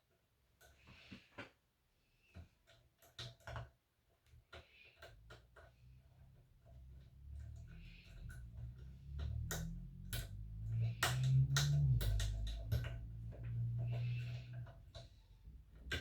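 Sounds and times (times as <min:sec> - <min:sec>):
low hum: 0:06.9 - 0:15.9
lock-picking tools clicking: 0:07.4 - 0:16.0.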